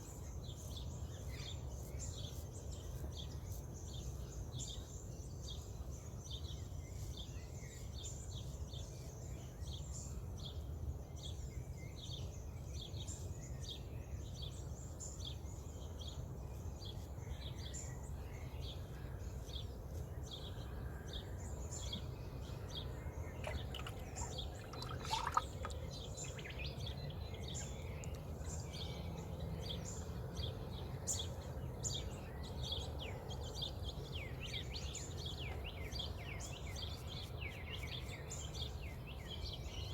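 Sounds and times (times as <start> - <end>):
birds calling: 21.8 - 30.1
bird chirping high: 23.4 - 27.0.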